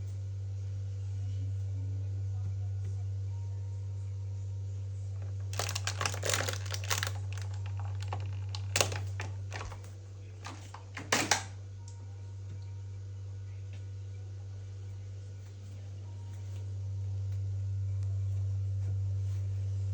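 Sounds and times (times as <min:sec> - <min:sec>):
low hum: 0:00.0 - 0:19.9
plastic packaging crinkling: 0:05.2 - 0:10.8.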